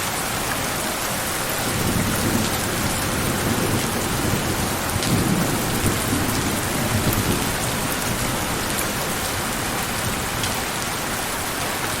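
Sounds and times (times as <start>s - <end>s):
heavy rain hissing: 0.0s - 12.0s
distant thunder rumble: 1.3s - 10.6s.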